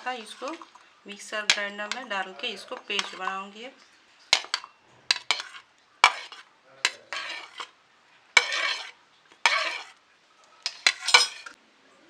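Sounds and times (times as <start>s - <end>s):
metal spoon clinking on cookware: 0.0s - 3.5s, 4.2s - 7.7s, 8.4s - 9.9s, 10.6s - 11.6s.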